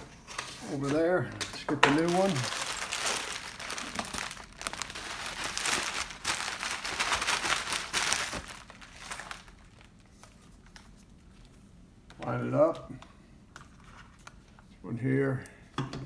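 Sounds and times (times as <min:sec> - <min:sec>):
packaging crinkling: 0:01.8 - 0:10.4.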